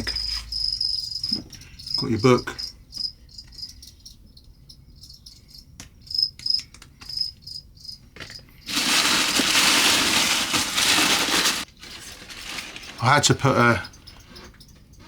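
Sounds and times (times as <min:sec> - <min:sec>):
cricket chirping: 0:00.0 - 0:15.0
packaging rustling: 0:08.6 - 0:13.5.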